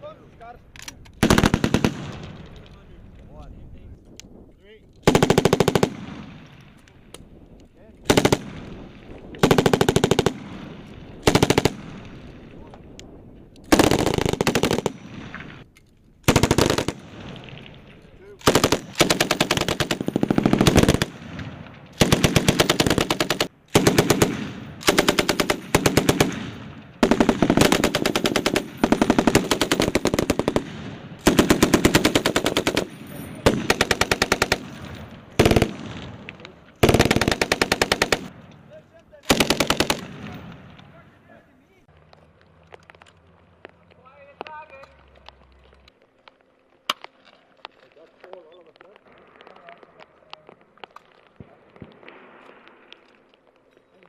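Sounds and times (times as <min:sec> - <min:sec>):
machine gun firing bursts: 0:01.2 - 0:02.3, 0:05.0 - 0:06.4, 0:08.0 - 0:08.8, 0:09.4 - 0:12.3, 0:13.7 - 0:15.6, 0:16.2 - 0:17.4, 0:18.4 - 0:36.2, 0:36.8 - 0:38.4, 0:39.2 - 0:40.4.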